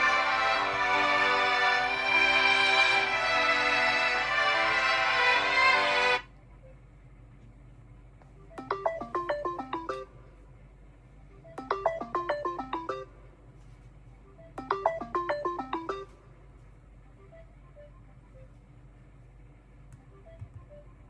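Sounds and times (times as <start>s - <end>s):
smartphone ringtone: 8.5s - 10.1s, 11.6s - 13.1s, 14.4s - 16.1s.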